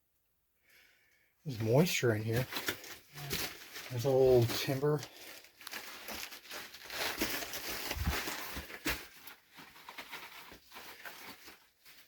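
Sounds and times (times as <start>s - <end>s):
rustling and scuffing in dirt: 4.0s - 9.0s.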